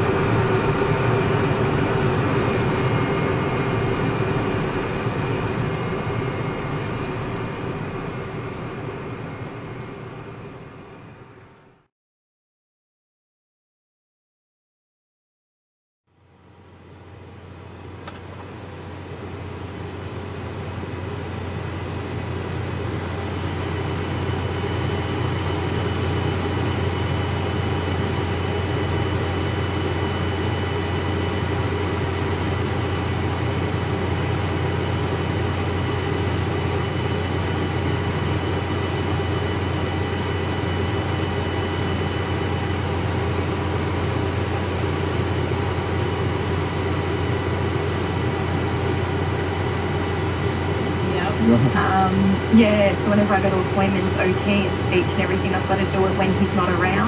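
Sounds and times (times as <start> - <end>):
high whining tones: 0.0 - 11.6
farm machinery engine drone: 0.0 - 11.9, 16.1 - 57.0.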